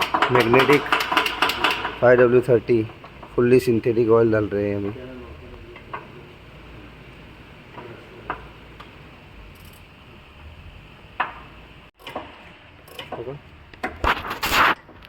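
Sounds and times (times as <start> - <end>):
handling clicks and knocks: 0.0 - 3.5.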